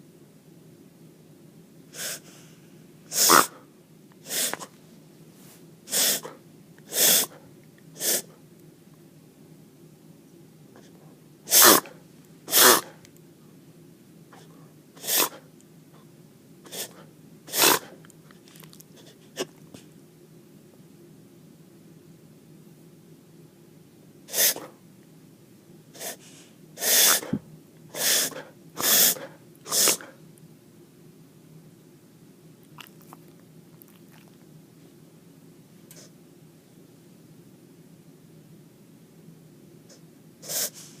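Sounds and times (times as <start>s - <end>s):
pet coughing: 3.1s - 4.7s, 5.9s - 7.4s, 8.0s - 8.4s, 10.8s - 13.0s, 14.3s - 15.5s, 16.6s - 18.0s, 24.3s - 24.8s, 26.0s - 26.2s, 26.8s - 30.2s.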